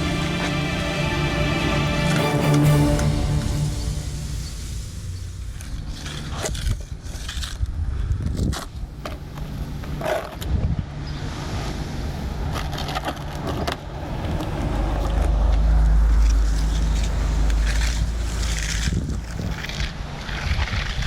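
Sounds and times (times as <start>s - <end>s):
engine running: 0.0s - 7.2s, 14.0s - 19.8s.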